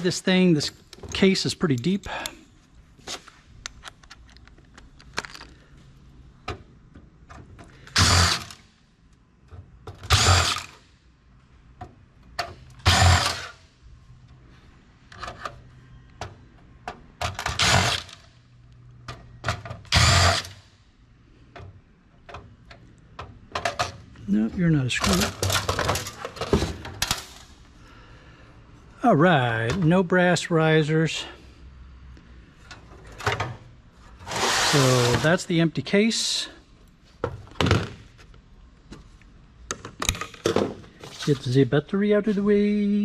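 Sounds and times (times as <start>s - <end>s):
clicks of screws and parts handled: 3.1s - 5.6s
cordless drill backing out screws: 17.2s - 18.2s.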